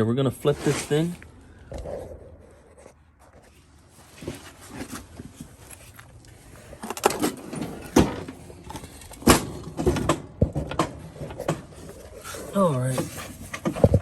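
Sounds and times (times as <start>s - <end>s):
lawn mower clunks and knocks: 6.8s - 11.9s.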